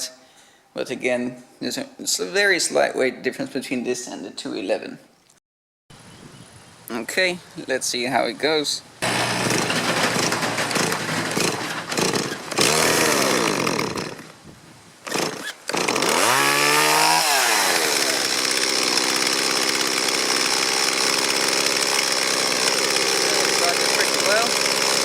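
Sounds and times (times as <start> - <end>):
chainsaw engine revving: 9.0 - 14.4, 15.1 - 25.0.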